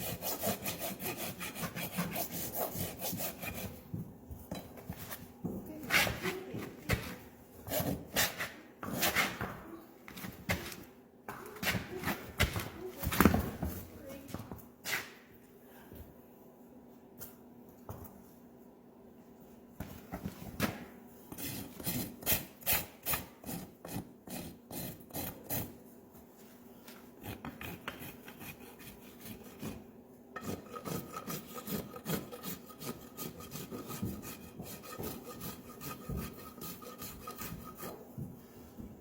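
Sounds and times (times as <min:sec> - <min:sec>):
rasp filing a hoof: 0:00.0 - 0:03.8, 0:21.3 - 0:25.8, 0:27.2 - 0:38.1.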